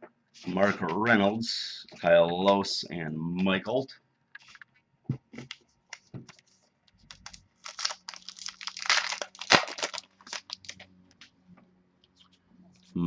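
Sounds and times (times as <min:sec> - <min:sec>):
card packs crinkling and tearing: 0:07.1 - 0:10.9.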